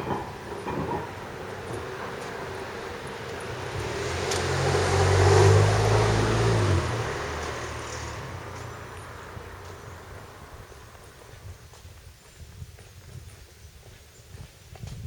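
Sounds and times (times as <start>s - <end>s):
tram passing with motor hum: 0.0s - 11.8s.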